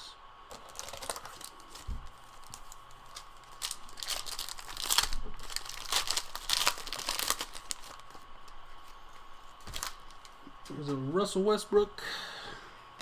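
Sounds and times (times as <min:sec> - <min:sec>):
foil wrapper crinkling and tearing: 0:00.5 - 0:09.0, 0:09.6 - 0:10.4.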